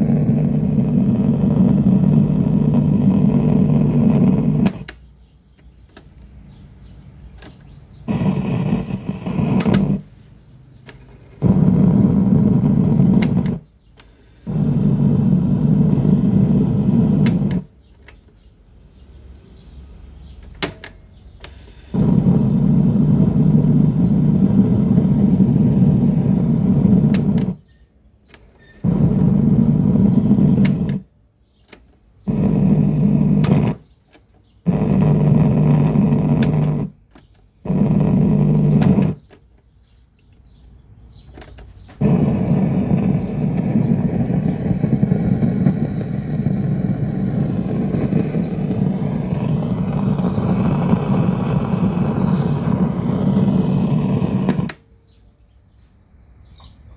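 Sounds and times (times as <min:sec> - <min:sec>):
small electric motor humming: 0:00.0 - 0:04.9, 0:08.1 - 0:10.1, 0:11.4 - 0:17.7, 0:21.9 - 0:27.6, 0:28.8 - 0:31.0, 0:32.3 - 0:33.9, 0:34.7 - 0:37.1, 0:37.7 - 0:39.2, 0:42.0 - 0:54.8.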